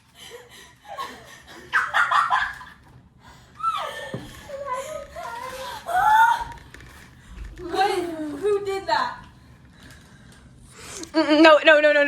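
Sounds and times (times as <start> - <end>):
children laughing: 0.0 - 3.0, 3.6 - 6.7.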